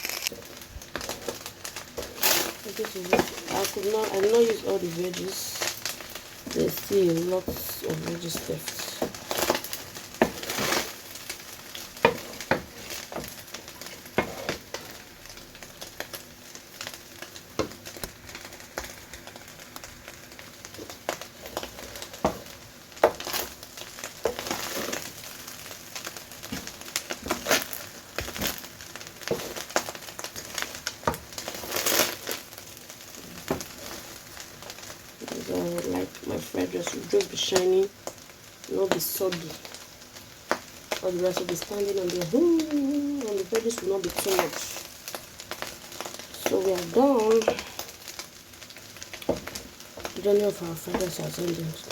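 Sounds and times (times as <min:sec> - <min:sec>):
food sizzling: 0:00.0 - 0:51.9
utensil scraping a pan: 0:01.0 - 0:03.6, 0:08.9 - 0:11.0, 0:12.0 - 0:14.9.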